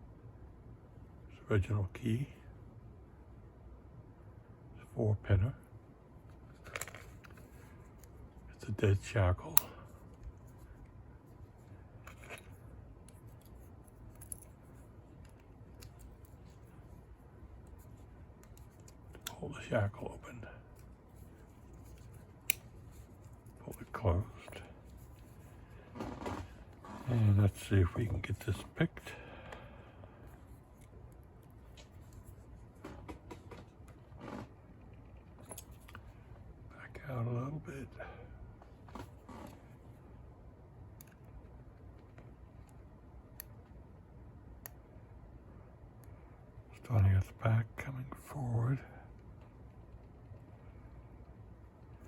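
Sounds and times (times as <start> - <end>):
padlock scrape: 6.4 - 8.2, 9.6 - 19.3, 20.7 - 27.4.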